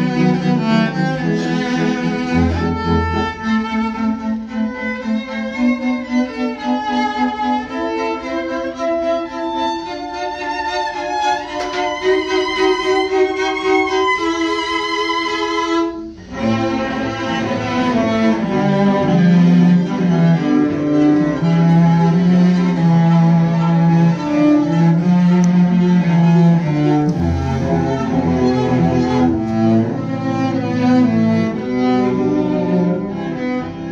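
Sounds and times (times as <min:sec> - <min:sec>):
cello slow melody: 0:00.0 - 0:33.9.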